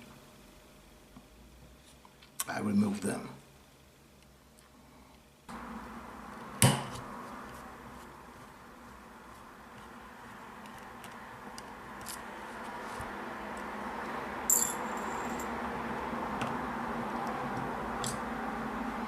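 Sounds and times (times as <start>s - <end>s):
steady background hum: 0.0s - 19.0s
metallic clink: 14.5s - 15.6s.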